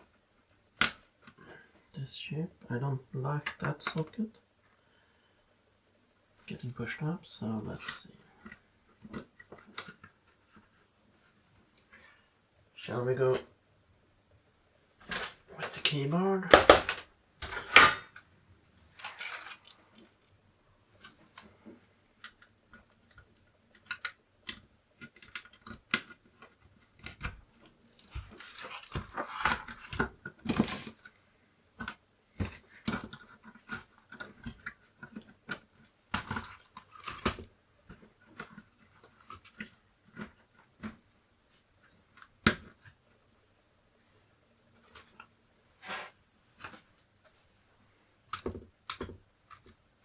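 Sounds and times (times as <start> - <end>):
rustling: 15.0 - 22.0.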